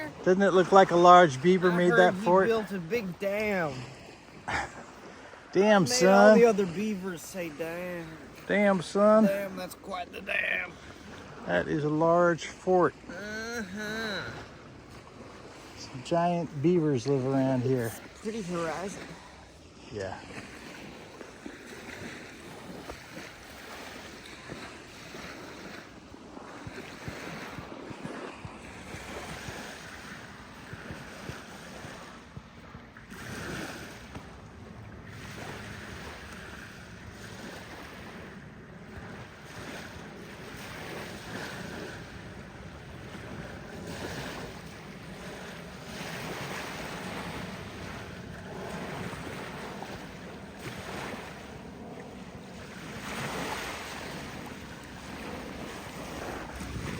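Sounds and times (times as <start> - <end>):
waves washing on a beach: 0.0 - 56.9
wind on microphone: 17.1 - 56.9.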